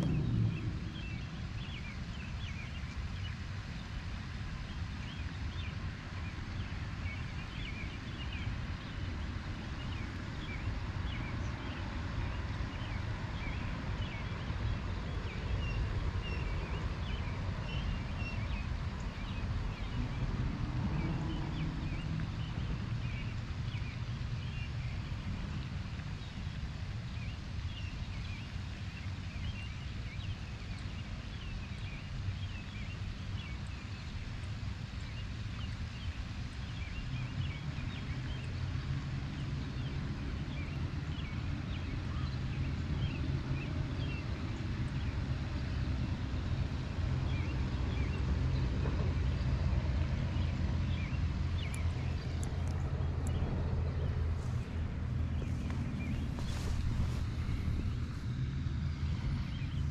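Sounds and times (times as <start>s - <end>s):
low rumble: 0.0s - 3.4s, 48.6s - 59.9s.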